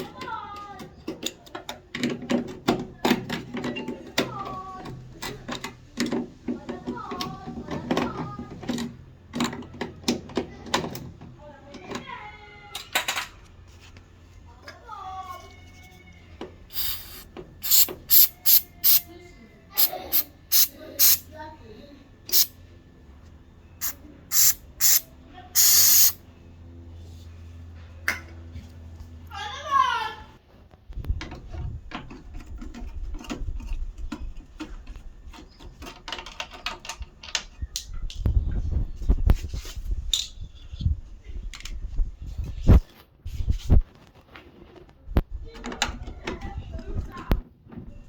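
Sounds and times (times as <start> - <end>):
aerosol spray hissing: 16.7 - 19.0, 19.8 - 21.3, 22.3 - 22.5, 23.8 - 25.0, 25.6 - 26.2
hand tools clicking and scraping: 16.7 - 19.0, 19.8 - 21.2, 22.3 - 22.5, 23.8 - 25.0, 25.6 - 26.2.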